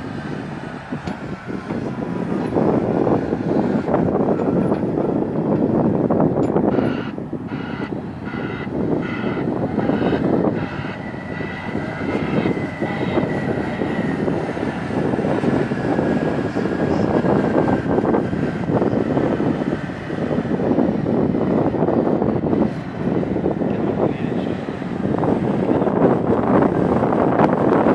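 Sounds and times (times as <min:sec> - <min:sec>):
heavy diesel machinery running: 0:00.0 - 0:27.9
reversing alarm beeping: 0:06.6 - 0:14.2.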